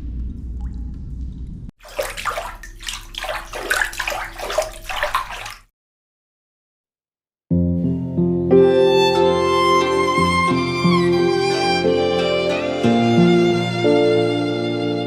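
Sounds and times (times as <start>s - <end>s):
low rumble: 0.0s - 1.7s
water splashing in bath: 1.7s - 5.7s.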